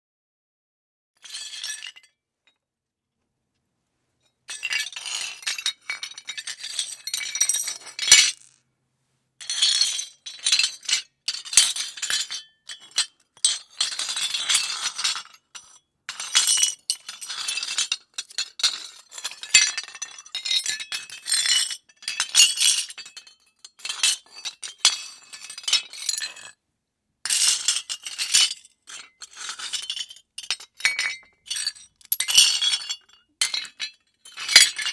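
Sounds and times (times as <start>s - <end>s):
rubble clattering and clinking: 4.5s - 8.7s, 27.3s - 34.9s.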